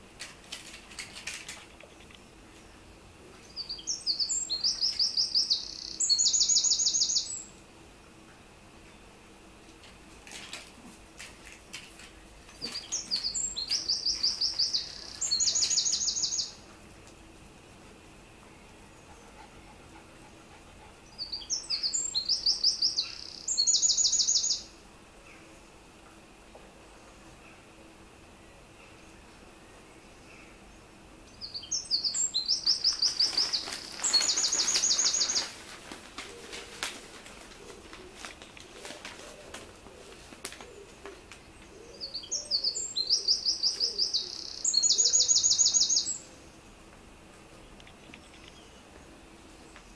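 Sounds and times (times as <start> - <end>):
songbird singing: 1.0 - 7.7, 12.4 - 49.9.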